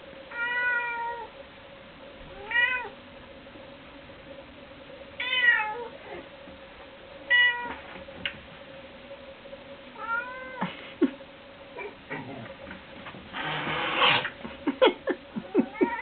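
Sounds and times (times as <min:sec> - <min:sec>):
faint steady hum: 0:00.0 - 0:16.0
cat meowing: 0:10.0 - 0:10.6, 0:15.7 - 0:16.0.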